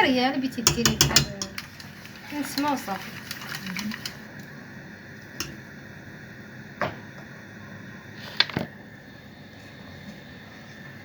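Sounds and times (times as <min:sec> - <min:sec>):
utensil knocking against saucepan: 0:00.6 - 0:01.8, 0:05.4 - 0:05.6.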